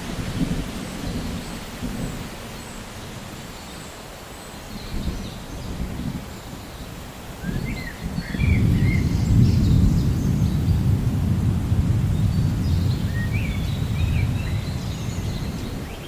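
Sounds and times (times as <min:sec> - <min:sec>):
thunder rumbling: 0:00.0 - 0:02.4, 0:07.4 - 0:16.0
rain hiss: 0:00.0 - 0:16.0.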